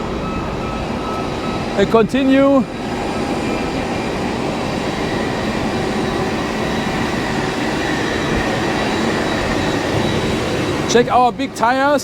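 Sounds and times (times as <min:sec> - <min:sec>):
faint high whine: 0:00.0 - 0:12.0
turbine machinery rumble: 0:00.0 - 0:12.0.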